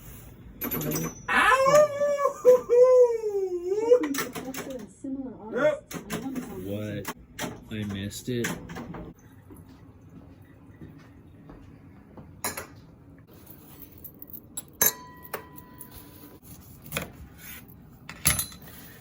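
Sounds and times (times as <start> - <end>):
glasses and utensils clinking: 0.6 - 1.4, 13.8 - 16.1.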